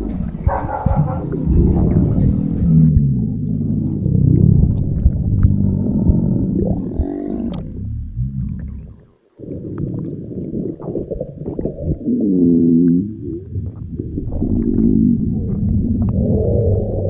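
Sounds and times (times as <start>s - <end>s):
stomach growling: 0.0s - 17.0s.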